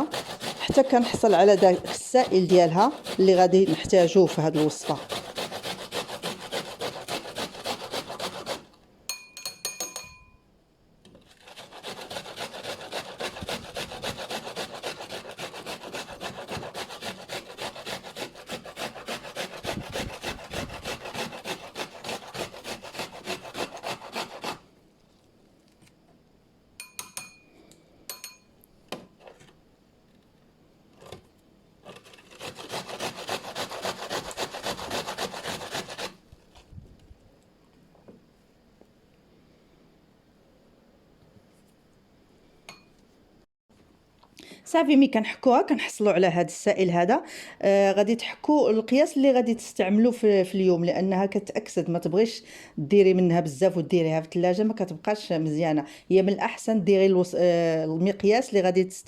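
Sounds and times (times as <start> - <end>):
onion rasping on hand grater: 0.0 - 8.7, 11.3 - 24.7, 31.8 - 36.2.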